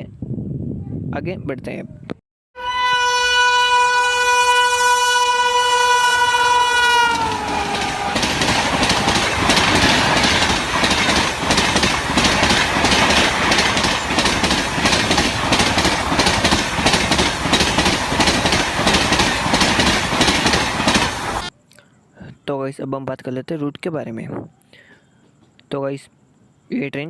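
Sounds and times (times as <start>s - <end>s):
train horn: 2.6s - 9.3s
train rushing past: 2.9s - 21.5s
wheels clicking over rail joints: 6.4s - 21.5s.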